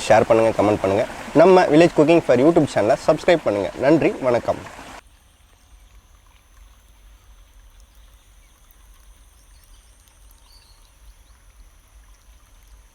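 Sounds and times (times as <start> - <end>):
faint ticks: 4.6 - 12.9.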